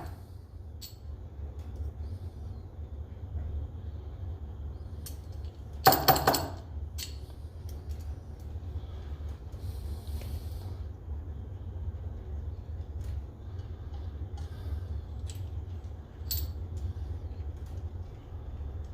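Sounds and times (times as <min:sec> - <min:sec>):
steady low hum: 0:00.0 - 0:18.9
small metal parts clinking: 0:15.2 - 0:16.9.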